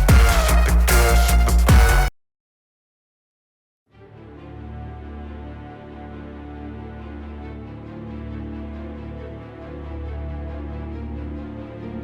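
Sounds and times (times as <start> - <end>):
quiet music with sustained notes: 3.9 - 12.0.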